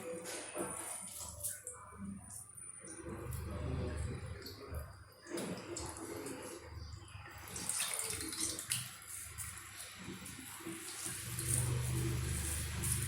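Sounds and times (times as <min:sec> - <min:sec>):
water running and splashing: 0:05.3 - 0:13.0.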